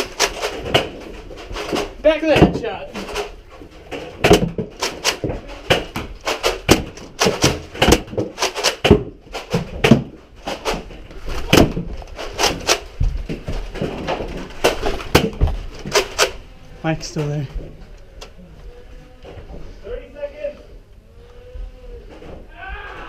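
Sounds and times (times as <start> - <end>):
sharp clicks and knocks: 0.0 - 16.4.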